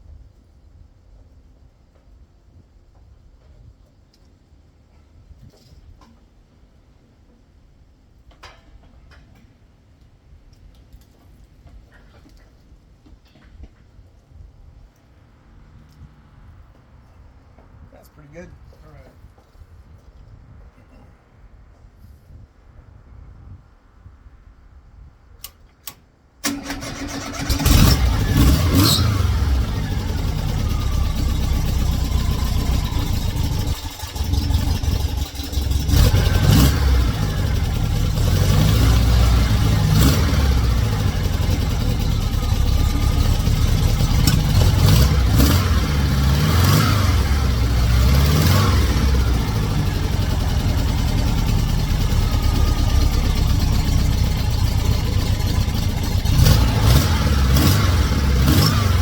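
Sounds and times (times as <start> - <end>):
engine starter cranking: 25.4 - 47.4
car engine running and revving: 27.6 - 59.0.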